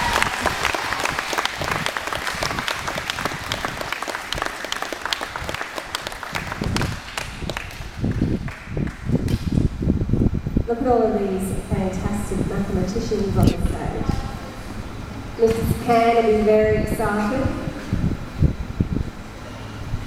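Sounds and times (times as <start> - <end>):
audience applauding: 0.0 - 9.2.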